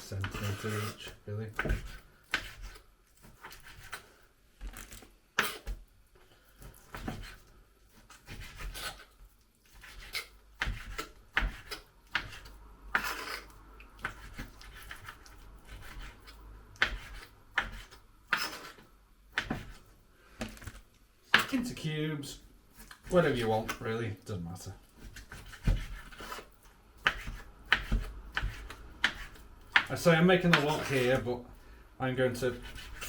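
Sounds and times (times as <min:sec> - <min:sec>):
blade sliding through meat: 0:00.2 - 0:04.1, 0:07.0 - 0:18.8.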